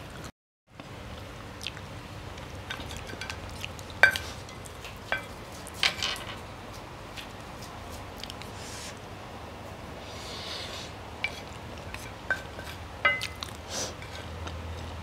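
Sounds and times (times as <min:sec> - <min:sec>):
cutlery clinking on a plate: 0:11.2 - 0:14.2.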